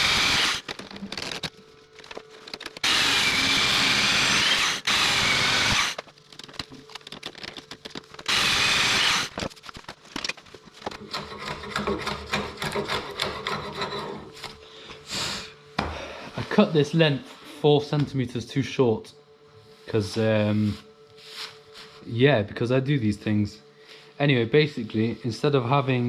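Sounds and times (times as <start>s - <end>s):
power tool cutting wood: 0.0s - 0.7s, 2.8s - 6.0s, 8.3s - 9.4s.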